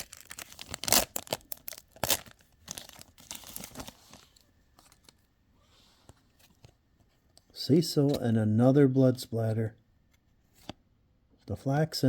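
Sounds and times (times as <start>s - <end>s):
card pack wrapper tearing: 0.0s - 5.0s.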